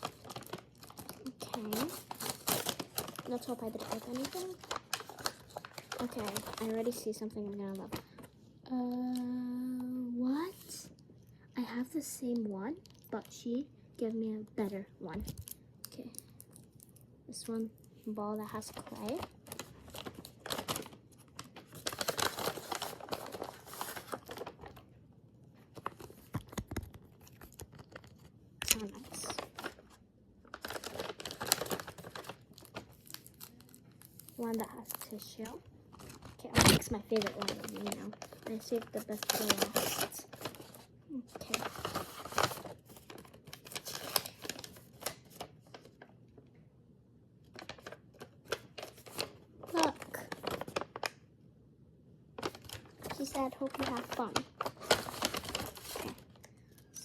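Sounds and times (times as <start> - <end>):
packaging crinkling and tearing: 0.0 - 9.3, 18.3 - 24.9, 25.6 - 46.1, 47.4 - 51.2, 52.4 - 57.0.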